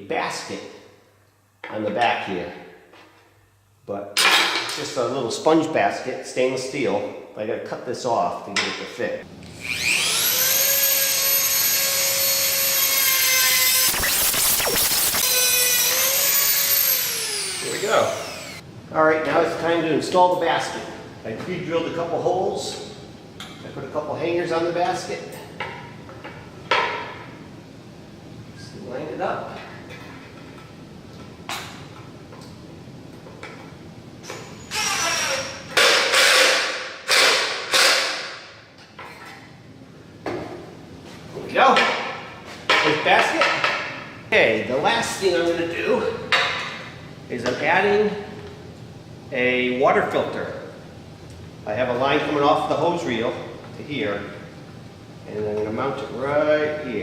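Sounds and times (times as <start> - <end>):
rotary cutting tool whining: 9.5 - 18.6, 34.2 - 38.2
grinding metal wire: 10.5 - 17.0.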